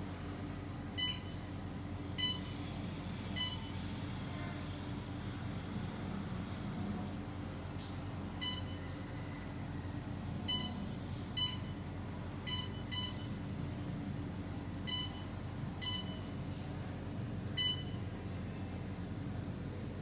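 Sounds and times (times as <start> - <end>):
short electronic beeps: 1.0 - 1.3, 2.2 - 2.5, 3.4 - 3.7, 8.4 - 8.8, 10.5 - 10.8, 11.4 - 11.8, 12.5 - 13.3, 14.9 - 16.3, 17.6 - 18.0.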